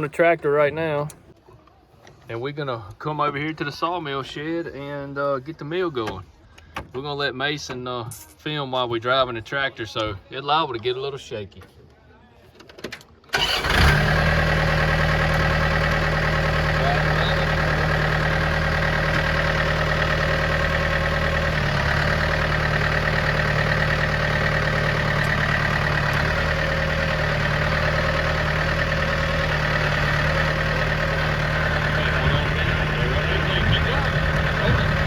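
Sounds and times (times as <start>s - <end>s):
tractor engine running: 13.4s - 35.0s.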